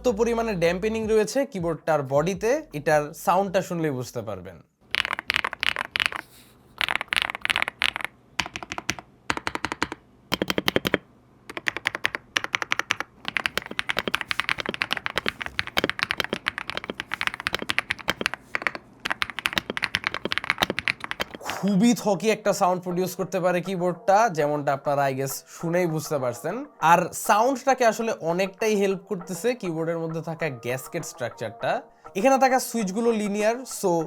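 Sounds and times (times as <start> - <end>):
typing on mechanical keyboard: 4.9 - 21.4.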